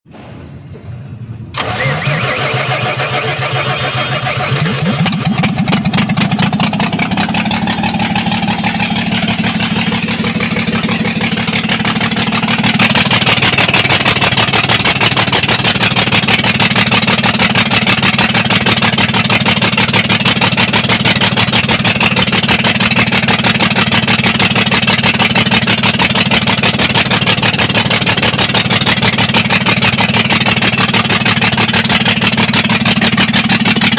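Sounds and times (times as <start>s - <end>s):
diesel truck engine starting and running: 1.4s - 33.9s.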